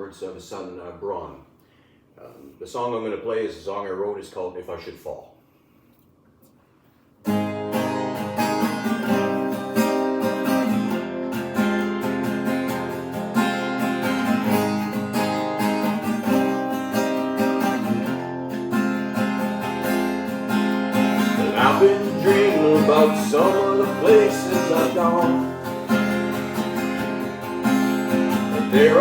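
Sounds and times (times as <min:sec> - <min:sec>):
acoustic guitar strumming: 0:07.2 - 0:29.0.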